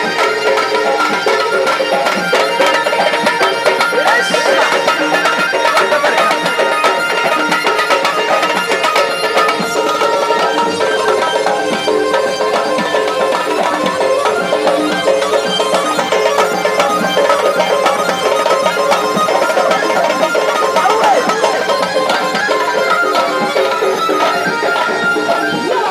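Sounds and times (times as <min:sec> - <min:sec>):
folk drums beating: 0:00.0 - 0:25.9
melodic folk instruments: 0:00.0 - 0:25.9.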